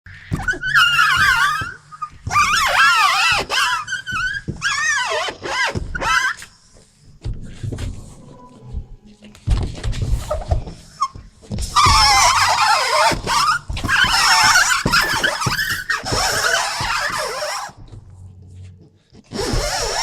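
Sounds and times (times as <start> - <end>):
high-pitched wavering squeaks: 0.1 - 6.6, 7.8 - 9.2, 10.0 - 17.8.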